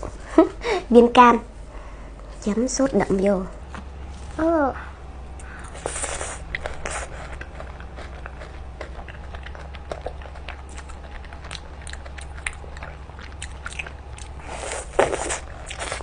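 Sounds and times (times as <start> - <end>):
steady low hum: 0.0 - 16.0
wet chewing and mouth smacks: 5.4 - 16.0.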